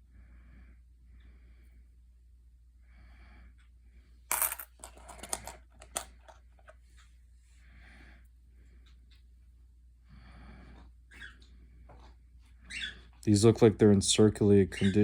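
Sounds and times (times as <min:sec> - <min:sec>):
coins clattering onto a surface: 0:04.3 - 0:06.1.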